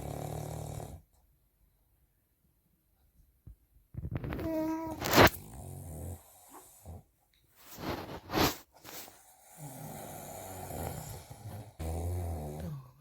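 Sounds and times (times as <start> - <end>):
man snoring: 0.0 - 1.0, 5.2 - 7.0, 9.4 - 13.0.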